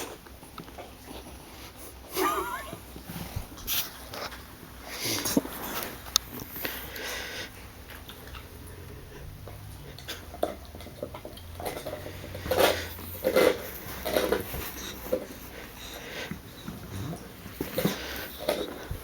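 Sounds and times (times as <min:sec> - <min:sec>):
dog snoring: 0:08.3 - 0:19.0.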